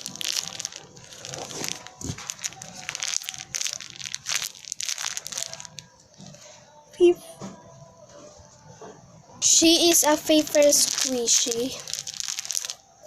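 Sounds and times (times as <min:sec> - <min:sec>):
paper crinkling and crunching: 0:00.0 - 0:06.5, 0:10.2 - 0:12.8.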